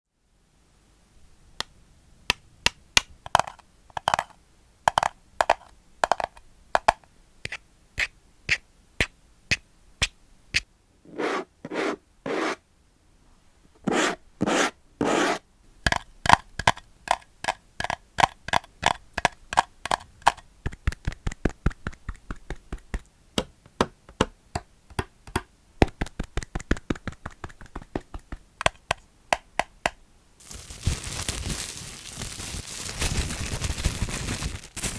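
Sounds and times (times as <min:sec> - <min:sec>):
scratching on hard plastic: 0:11.1 - 0:12.6, 0:13.8 - 0:15.4, 0:30.4 - 0:34.9.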